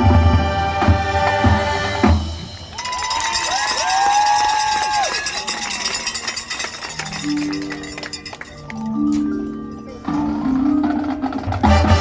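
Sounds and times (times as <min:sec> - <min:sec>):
sharp percussion hits: 0:02.8 - 0:09.5.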